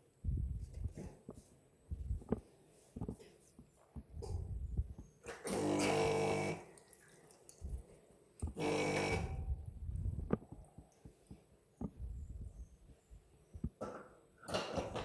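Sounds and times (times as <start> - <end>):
espresso machine buzzing hum: 5.5 - 6.6, 8.5 - 9.5.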